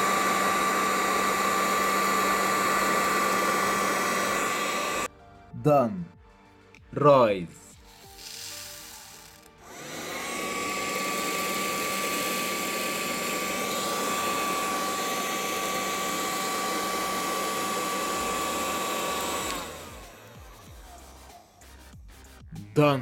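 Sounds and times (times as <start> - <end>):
vacuum cleaner motor whining: 0.0 - 5.1, 8.2 - 20.7.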